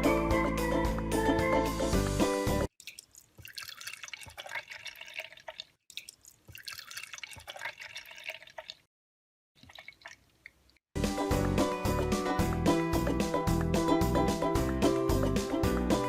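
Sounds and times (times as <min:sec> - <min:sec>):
thick liquid dripping and splashing: 0:02.8 - 0:08.9, 0:09.6 - 0:10.8.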